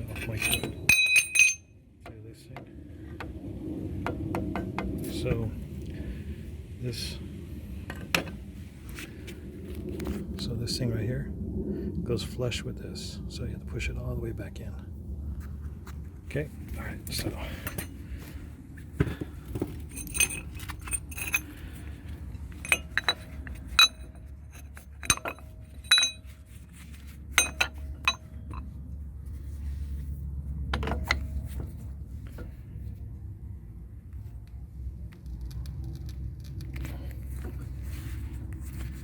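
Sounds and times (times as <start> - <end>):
metal tools clinking: 0.0 - 1.7, 17.1 - 18.0, 19.1 - 28.7
steady low hum: 0.0 - 39.0.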